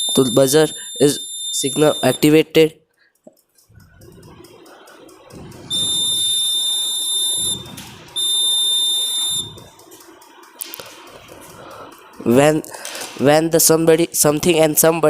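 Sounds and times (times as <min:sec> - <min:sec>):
high-pitched alarm buzzer: 0:00.0 - 0:02.3, 0:05.6 - 0:09.8.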